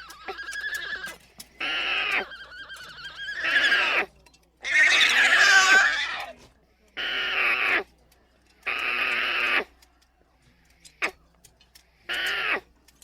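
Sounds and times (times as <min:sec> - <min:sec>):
alpaca calls: 0:00.0 - 0:06.4, 0:07.0 - 0:07.9, 0:08.6 - 0:09.8, 0:12.1 - 0:12.7.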